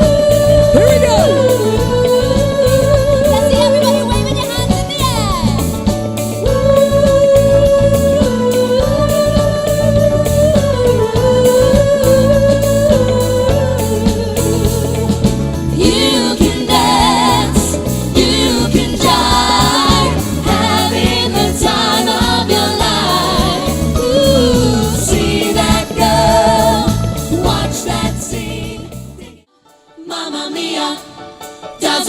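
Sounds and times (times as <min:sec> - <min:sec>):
voices singing: 0:00.0 - 0:04.1, 0:15.8 - 0:32.0
bass and drum backing: 0:00.0 - 0:29.4.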